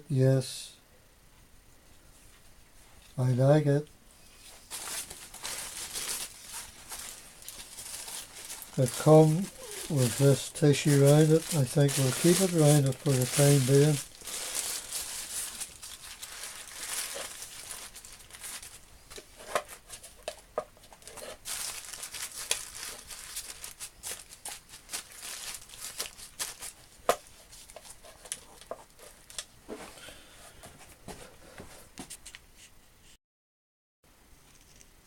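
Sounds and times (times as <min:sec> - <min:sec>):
tissue paper rustling: 0:04.3 - 0:29.4.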